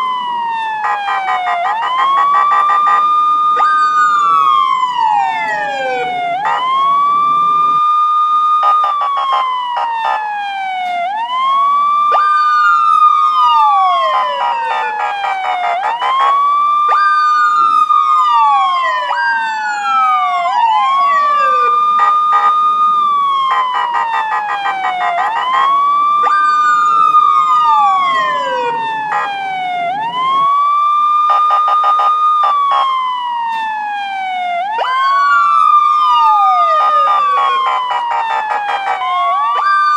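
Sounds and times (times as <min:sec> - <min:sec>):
police siren wailing: 0:00.0 - 0:39.9.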